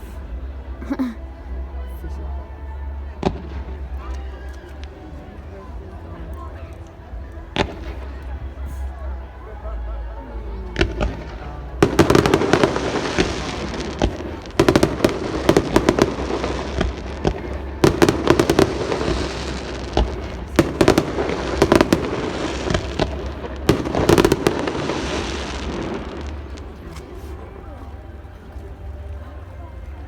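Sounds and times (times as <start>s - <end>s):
fireworks bangs and crackles: 3.1s - 5.8s, 7.5s - 9.0s, 10.6s - 28.4s
steady low rumble: 10.4s - 30.0s.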